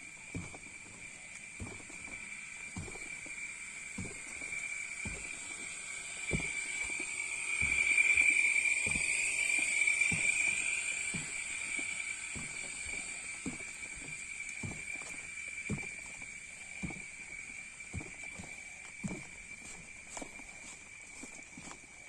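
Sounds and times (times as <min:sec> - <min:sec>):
high-pitched drone: 0:04.1 - 0:15.0.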